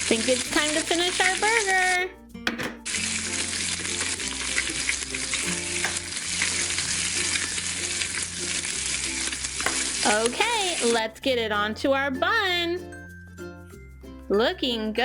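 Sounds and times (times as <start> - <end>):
toy grill sizzling: 0.0 - 2.1, 2.8 - 11.0
soft background music: 0.0 - 15.0.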